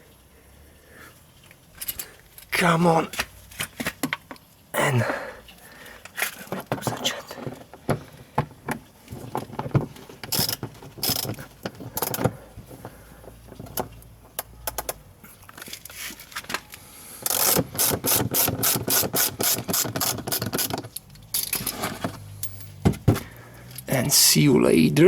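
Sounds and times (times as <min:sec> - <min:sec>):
hand ratchet clicking: 0:10.3 - 0:12.3, 0:17.2 - 0:21.6.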